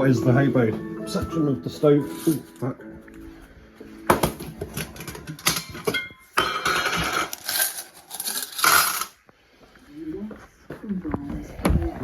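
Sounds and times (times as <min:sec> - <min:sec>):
metal clinking and clattering: 0:04.2 - 0:09.1.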